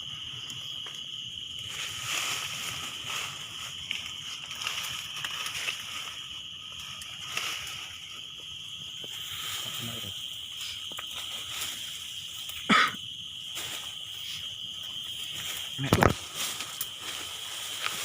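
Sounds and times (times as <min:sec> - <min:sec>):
insects chirring: 0:00.0 - 0:18.0.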